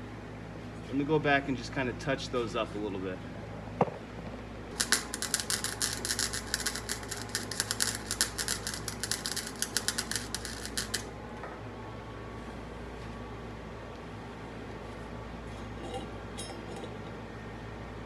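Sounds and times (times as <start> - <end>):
welder crackling: 4.7 - 11.1.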